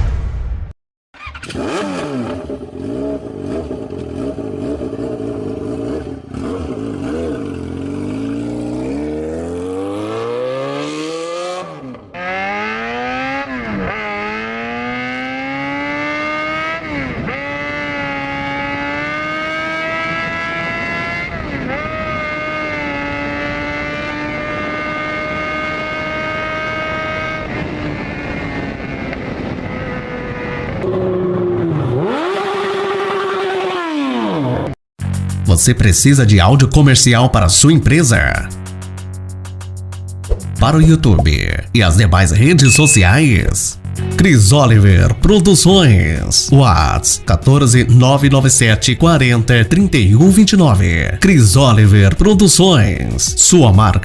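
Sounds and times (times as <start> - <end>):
motorcycle engine accelerating: 1.2 - 34.8.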